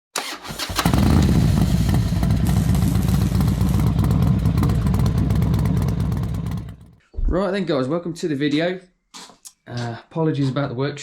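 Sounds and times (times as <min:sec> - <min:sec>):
motorcycle engine running: 0:00.8 - 0:07.0.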